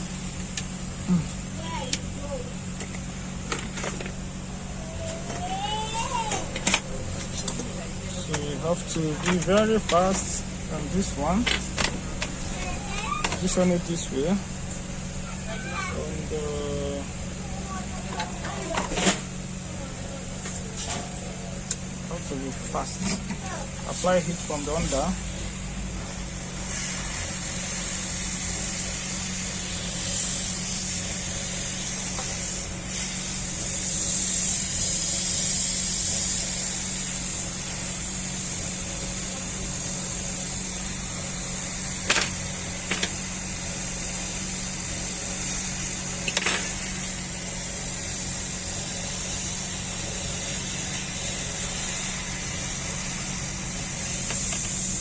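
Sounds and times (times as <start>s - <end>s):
hot air gun blowing: 20.4s - 55.0s.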